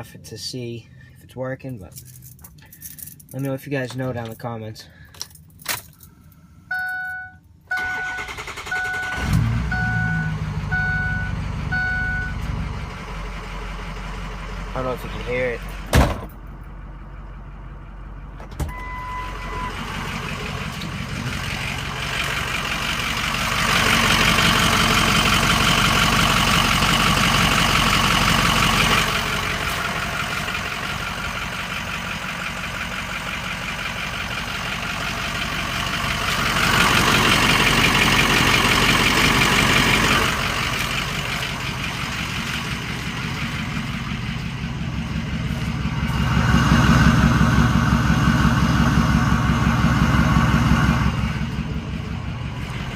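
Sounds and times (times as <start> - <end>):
short beep: 6.7 - 12.5, 18.7 - 19.8
diesel engine idling with knocking tick: 9.8 - 52.9.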